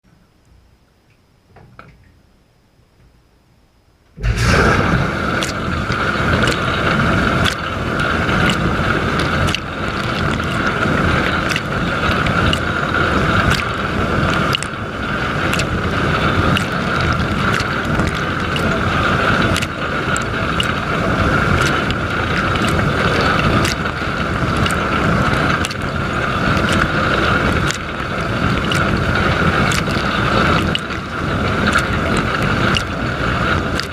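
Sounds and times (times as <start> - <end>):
pump motor whining: 4.2 - 33.9
sharp water splashes: 4.2 - 33.9
water spraying: 4.2 - 33.9.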